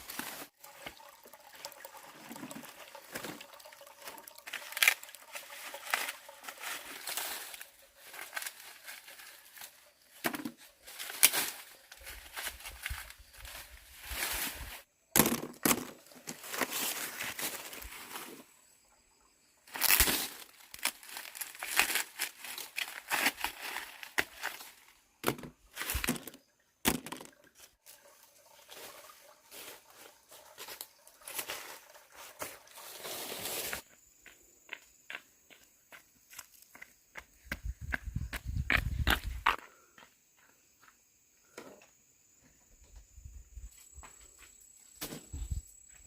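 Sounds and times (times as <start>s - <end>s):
rustling and crinkling: 4.4s - 18.5s, 19.7s - 27.8s, 28.8s - 33.9s.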